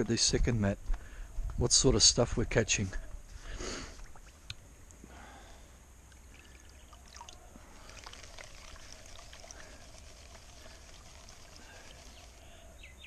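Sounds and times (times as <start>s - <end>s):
water pouring and trickling: 6.1s - 12.8s.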